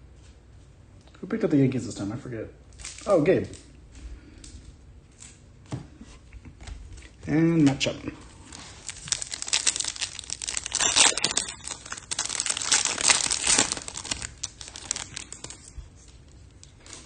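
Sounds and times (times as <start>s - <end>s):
foil wrapper crinkling and tearing: 2.7s - 3.6s, 8.2s - 17.0s.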